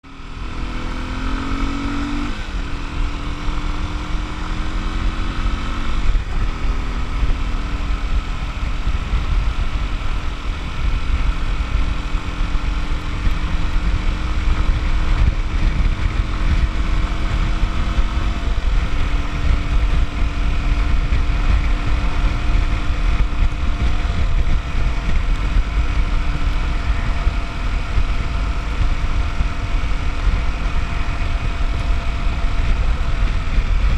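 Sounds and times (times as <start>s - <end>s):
motorcycle engine running: 0.0s - 33.9s.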